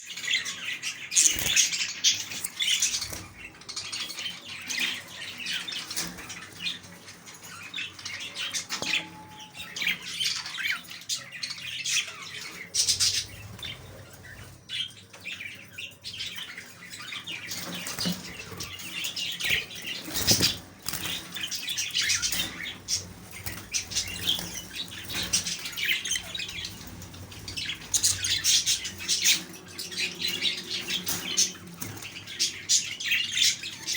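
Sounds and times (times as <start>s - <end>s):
budgerigars chattering: 7.8s - 33.9s
wings flapping: 19.5s - 27.0s.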